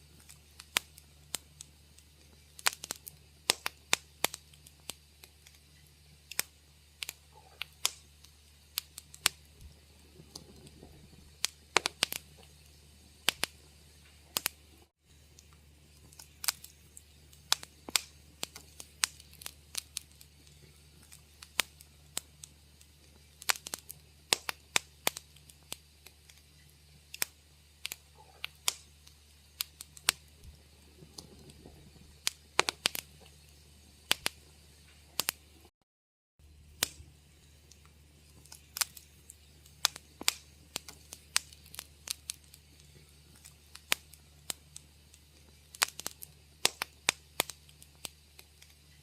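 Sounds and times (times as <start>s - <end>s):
faint low hum: 0.0s - 35.7s, 36.4s - 49.0s
wood fire crackling: 0.0s - 35.7s, 36.4s - 49.0s.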